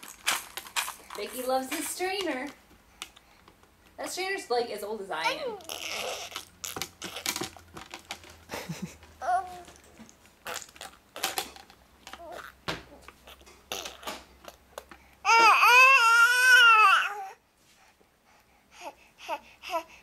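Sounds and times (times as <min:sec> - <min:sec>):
baby squealing: 0:05.2 - 0:07.3
baby vocalizing softly: 0:05.5 - 0:07.3.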